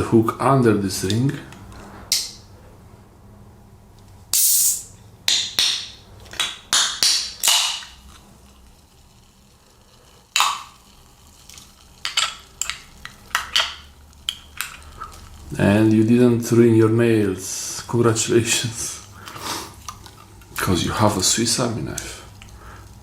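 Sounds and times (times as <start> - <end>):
fizzing hisses: 4.3 - 4.9, 17.4 - 20.0
soda can popping open: 4.3 - 8.2, 10.3 - 14.9.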